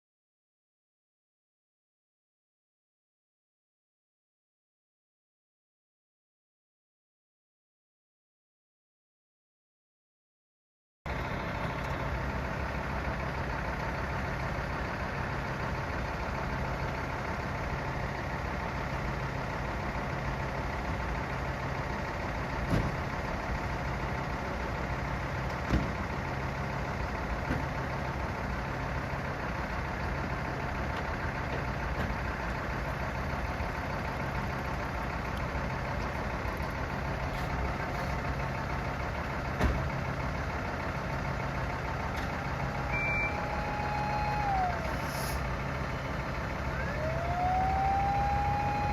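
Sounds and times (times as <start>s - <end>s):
vehicle engine idling: 11.1s - 48.9s.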